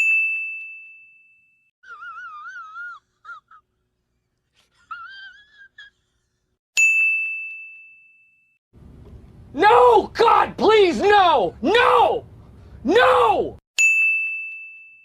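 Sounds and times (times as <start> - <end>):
bell ding: 6.8 - 8.6, 13.8 - 15.0.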